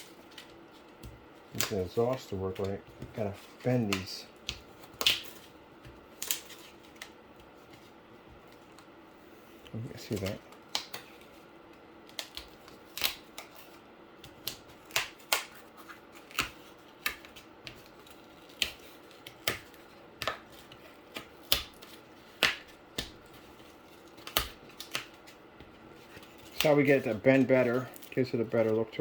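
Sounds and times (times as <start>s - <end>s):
cardboard crackling and snapping: 0.0s - 8.9s, 9.9s - 29.0s.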